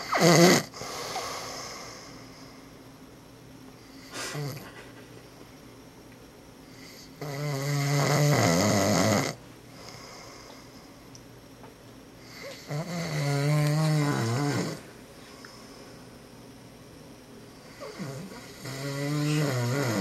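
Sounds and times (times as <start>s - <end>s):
man snoring: 0.0s - 1.8s, 4.1s - 4.6s, 6.9s - 9.4s, 12.4s - 14.8s, 17.7s - 20.0s.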